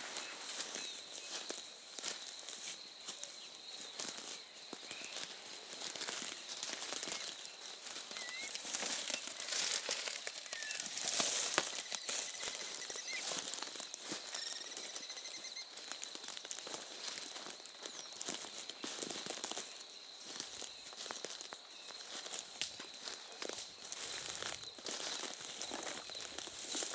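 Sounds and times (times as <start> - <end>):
crackling rustle near microphone: 4.0 - 26.9
birds chirping: 6.1 - 16.2
bird trill: 6.4 - 15.8
steady thin high tone: 8.2 - 13.4.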